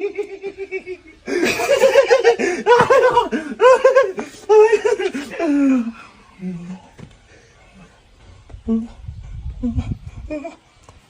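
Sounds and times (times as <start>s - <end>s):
high-pitched laughter: 0.0s - 6.0s.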